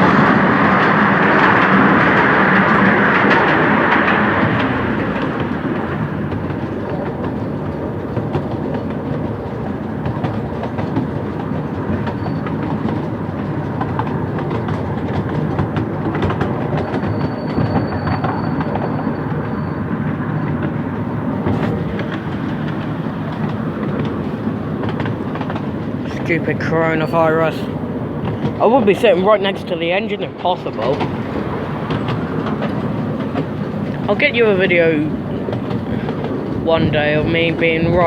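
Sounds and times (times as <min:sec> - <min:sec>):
railway coach rumbling on track: 0:00.0 - 0:38.0
wheels clicking over rail joints: 0:00.0 - 0:38.0
faint high squeal: 0:12.0 - 0:12.6, 0:16.8 - 0:20.7.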